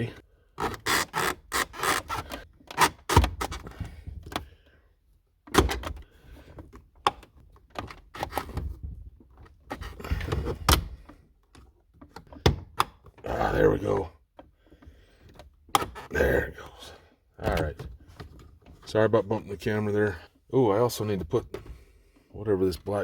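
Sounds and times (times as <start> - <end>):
plastic rubbing and scraping: 0.0 - 4.4, 6.2 - 16.8.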